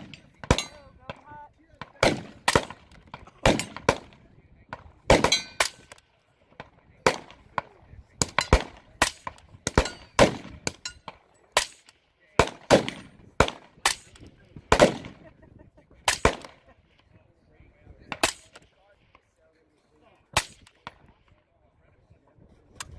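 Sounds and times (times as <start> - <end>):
suppressed rifle shots: 1.8 - 6.0, 16.1 - 16.7, 18.1 - 18.6.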